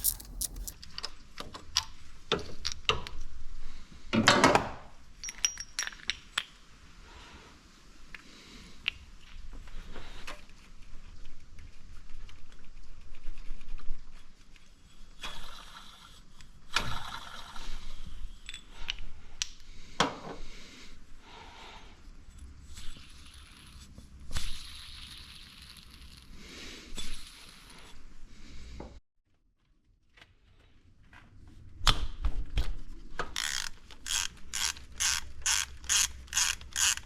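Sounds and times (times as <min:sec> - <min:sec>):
metal scraping: 0:00.0 - 0:00.8
metal tools clinking: 0:00.0 - 0:00.8.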